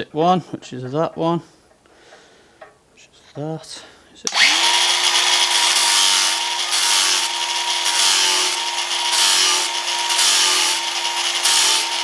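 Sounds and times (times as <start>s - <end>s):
angle grinder cutting steel: 4.3s - 12.0s.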